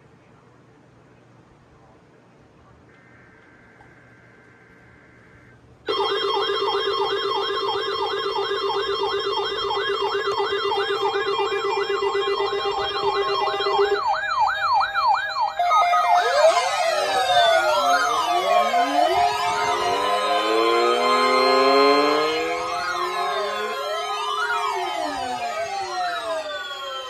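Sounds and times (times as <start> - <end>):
warbling siren tones: 5.1 - 27.0
steady beeping tones: 5.9 - 27.0
fast sweeping tones: 8.6 - 27.0.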